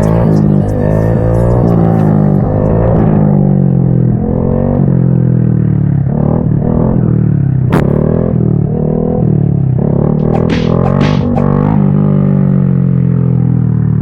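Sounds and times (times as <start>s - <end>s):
music bass line: 0.0s - 3.2s, 10.2s - 12.0s
motorcycle engine revving: 0.0s - 14.0s
sharp knock: 10.2s - 11.7s.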